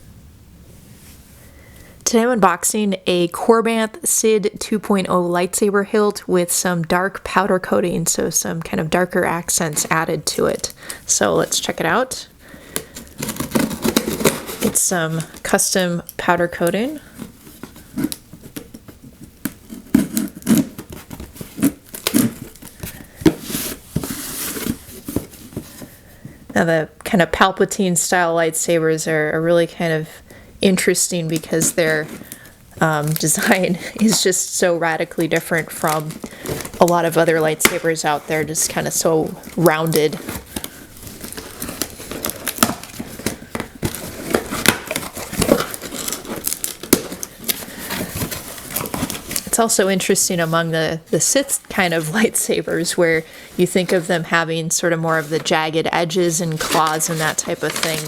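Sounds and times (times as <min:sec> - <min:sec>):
packaging crinkling and tearing: 0:12.5 - 0:26.0, 0:31.3 - 0:49.6, 0:56.2 - 0:58.0.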